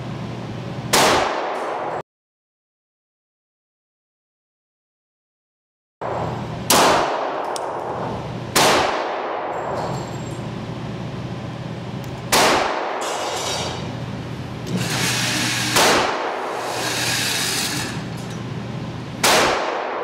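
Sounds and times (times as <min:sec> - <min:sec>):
pistol shots: 0:00.9 - 0:01.9, 0:06.7 - 0:07.6, 0:08.5 - 0:09.5, 0:12.3 - 0:13.0, 0:15.8 - 0:16.4, 0:19.2 - 0:20.0.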